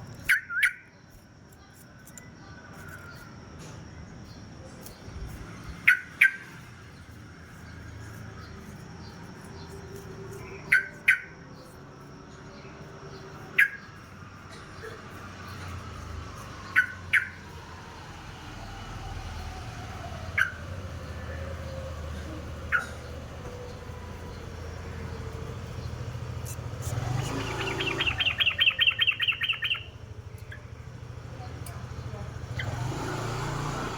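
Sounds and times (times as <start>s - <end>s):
bird giving sharp calls: 5.8s - 6.6s, 16.6s - 17.5s, 20.3s - 21.3s, 22.5s - 23.8s, 26.0s - 30.8s.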